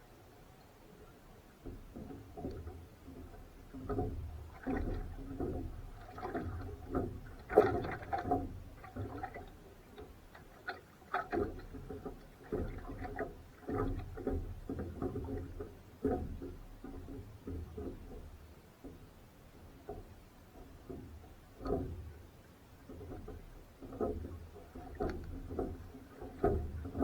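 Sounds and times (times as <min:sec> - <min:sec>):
oars knocking and splashing: 0:01.7 - 0:18.3, 0:22.9 - 0:27.0.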